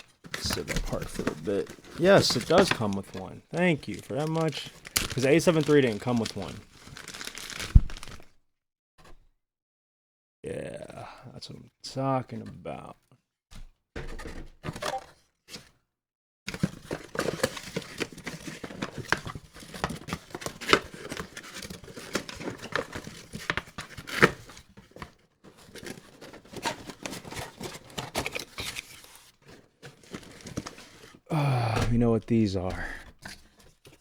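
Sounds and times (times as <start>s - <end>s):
packaging rustling and tearing: 0.0s - 8.3s, 16.5s - 34.0s.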